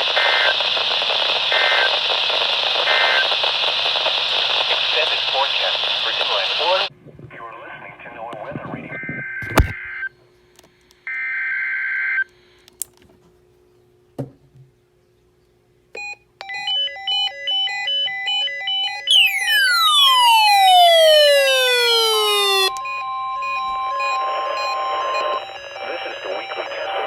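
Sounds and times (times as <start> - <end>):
radio hiss: 0.0 - 9.8, 19.1 - 22.7, 25.3 - 27.0
steady warning alarm tone: 17.9 - 27.0
buzzy data tones: 19.1 - 22.7
electronic beeping: 19.1 - 22.8.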